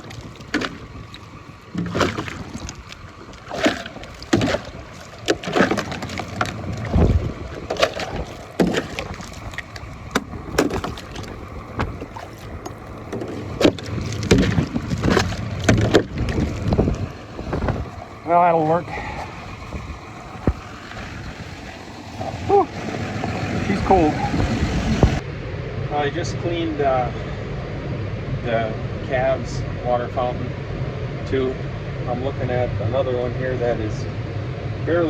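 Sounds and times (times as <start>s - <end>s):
ice knocking: 0.0s - 22.4s
water splashing: 0.0s - 25.2s.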